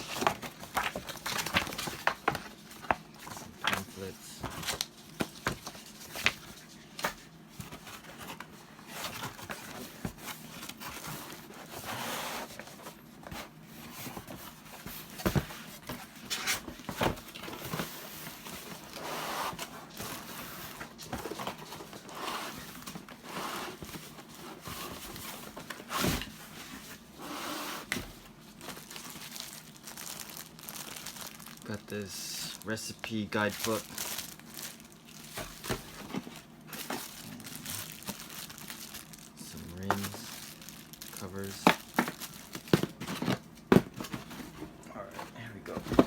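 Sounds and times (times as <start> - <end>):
packaging rustling and crinkling: 0.0 - 46.0.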